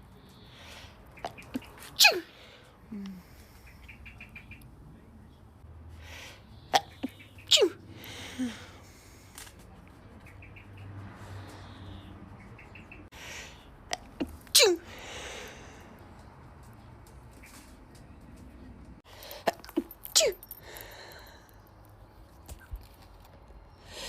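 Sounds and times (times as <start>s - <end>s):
woman sneezing: 2.0s - 2.3s, 7.5s - 7.8s, 19.8s - 20.5s.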